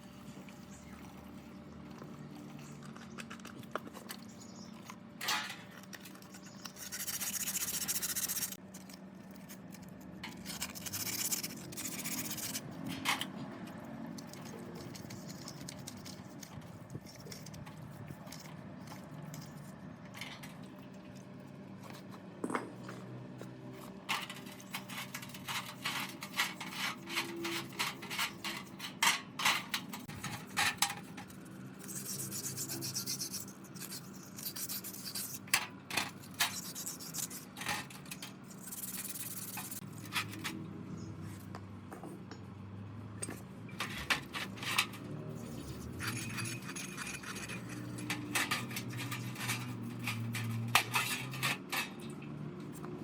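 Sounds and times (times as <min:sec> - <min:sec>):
rasping strokes on metal: 0:06.4 - 0:08.6, 0:10.4 - 0:12.8, 0:31.8 - 0:35.5, 0:36.1 - 0:37.9, 0:43.8 - 0:52.0
metal scrapes and taps: 0:23.8 - 0:40.6, 0:43.2 - 0:53.0.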